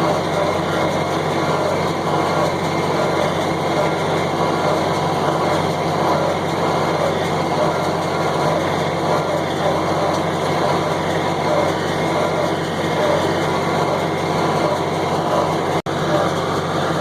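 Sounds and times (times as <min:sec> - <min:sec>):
square baler baling hay: 0:00.0 - 0:17.0
tractor engine running under load: 0:00.0 - 0:17.0.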